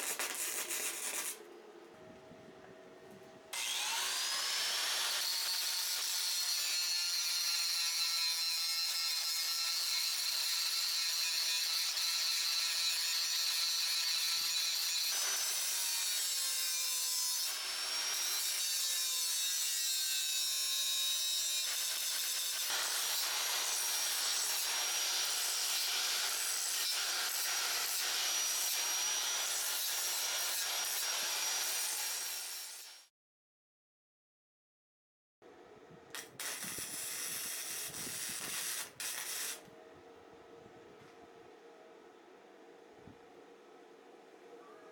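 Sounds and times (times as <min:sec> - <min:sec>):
power tool grinding steel: 0:00.0 - 0:01.4, 0:03.6 - 0:33.0, 0:36.2 - 0:39.7.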